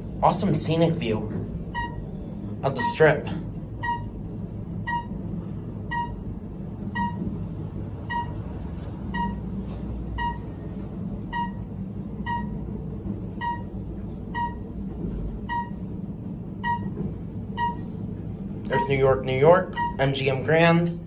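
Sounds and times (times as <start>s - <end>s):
elevator car rumbling: 0.0s - 21.0s
short electronic beeps: 1.7s - 2.1s, 2.8s - 3.0s, 3.8s - 4.1s, 4.8s - 5.2s, 5.9s - 6.2s, 7.0s - 7.2s, 8.1s - 8.4s, 9.1s - 9.4s, 10.2s - 10.5s, 11.3s - 11.6s, 12.2s - 12.6s, 13.4s - 13.7s, 14.3s - 14.6s, 15.5s - 15.8s, 16.6s - 16.9s, 17.6s - 17.8s, 19.7s - 20.2s.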